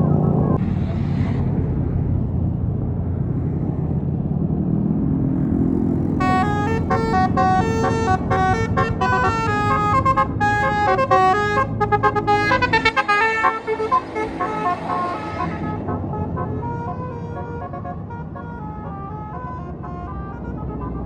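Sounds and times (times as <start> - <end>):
bus engine rumble: 0.0 - 21.0
multi-tone bus horn melody: 6.0 - 21.0.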